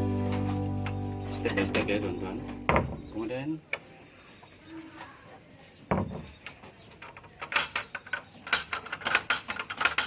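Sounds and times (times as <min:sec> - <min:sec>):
dull thump: 0:02.7 - 0:03.1.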